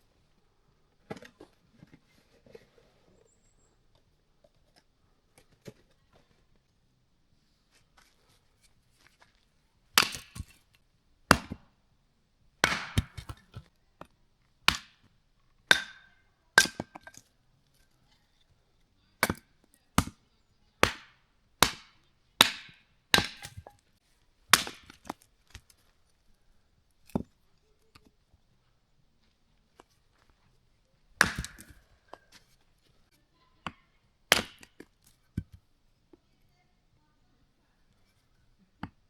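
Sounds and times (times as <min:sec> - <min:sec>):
chopping dry branches: 0:10.0 - 0:11.7, 0:12.6 - 0:13.7, 0:14.7 - 0:15.1, 0:15.7 - 0:17.2, 0:19.2 - 0:20.2, 0:20.8 - 0:23.8, 0:24.5 - 0:25.8, 0:31.2 - 0:32.5, 0:34.3 - 0:35.5.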